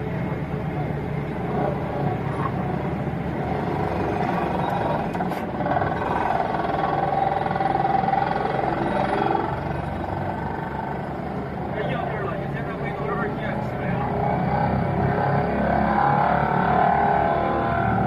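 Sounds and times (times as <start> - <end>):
diesel engine: 0.0 - 18.0
whining tone: 0.0 - 18.0.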